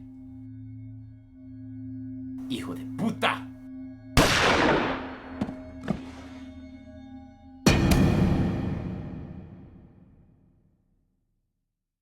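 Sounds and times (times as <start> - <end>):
droning music: 0.0 - 9.8
gunshot echo: 4.2 - 6.2, 7.7 - 10.3.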